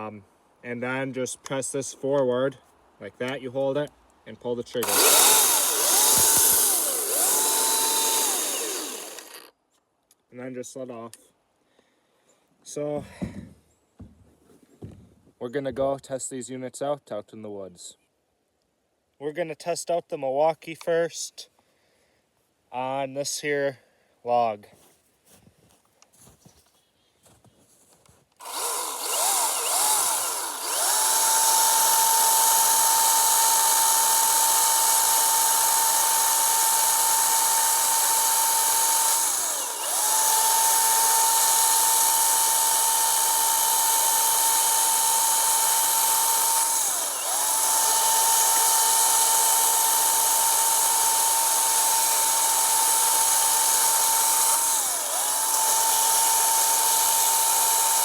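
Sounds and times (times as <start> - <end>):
electric chainsaw cutting log: 4.8 - 9.5, 28.4 - 58.0.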